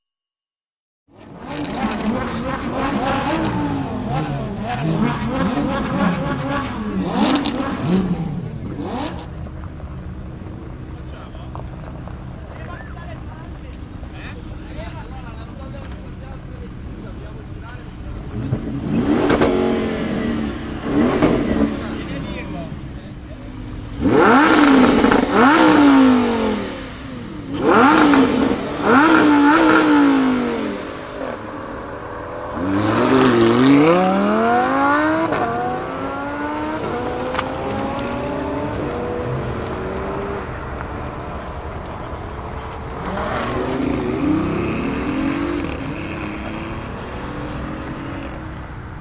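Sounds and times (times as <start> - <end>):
car engines revving: 1.1 - 49.0
car accelerating through gears: 1.4 - 9.8, 17.9 - 49.0.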